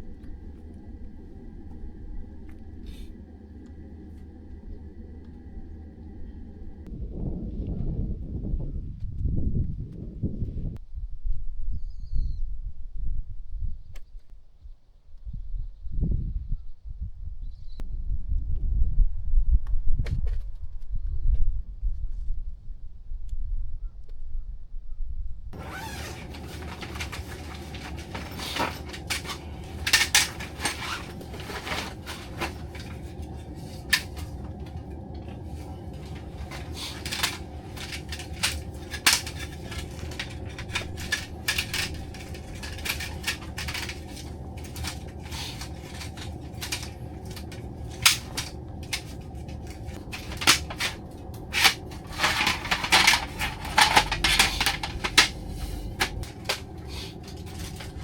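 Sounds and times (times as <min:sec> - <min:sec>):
steady low hum: 0:00.0 - 0:11.2, 0:24.5 - 0:58.0.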